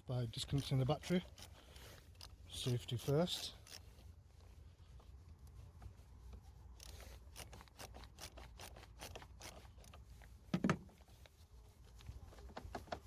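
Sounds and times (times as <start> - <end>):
hand tool clicking: 0.4 - 3.9, 6.8 - 10.0.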